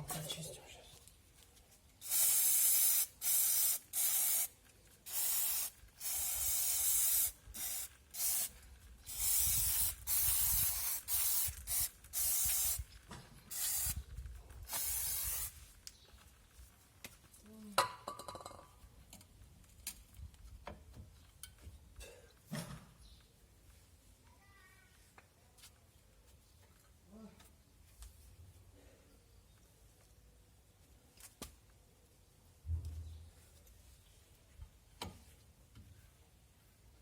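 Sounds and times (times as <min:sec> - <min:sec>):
aerosol spray hissing bursts: 0:02.0 - 0:12.9, 0:13.5 - 0:14.0, 0:14.7 - 0:15.7.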